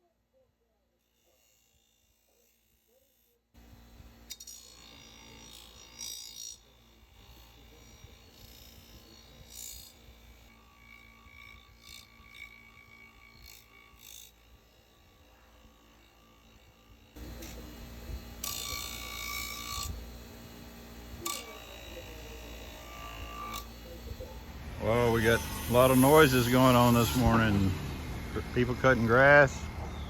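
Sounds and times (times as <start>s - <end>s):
distant machinery rumbling: 24.0s - 30.0s.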